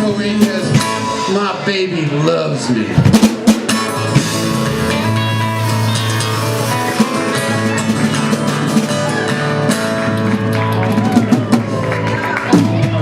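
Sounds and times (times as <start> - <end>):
guitar: 0.0 - 13.0.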